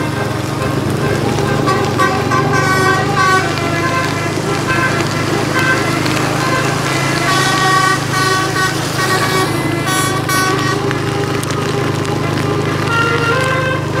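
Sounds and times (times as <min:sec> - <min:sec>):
bus air horn playing notes: 0:00.0 - 0:14.0.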